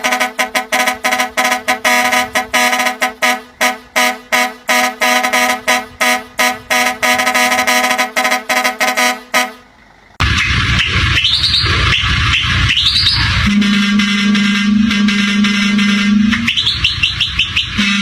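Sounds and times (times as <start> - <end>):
musical air horn blasts: 0.0 - 9.7, 13.2 - 18.0
loud noisy sound: 5.2 - 18.0.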